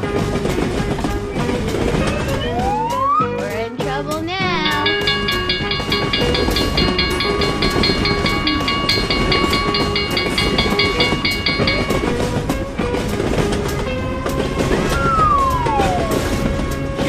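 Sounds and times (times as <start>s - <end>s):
passing train rumble and clatter: 0.0s - 2.8s, 3.5s - 17.0s
railroad crossing bell ringing: 4.5s - 13.6s, 14.9s - 16.5s.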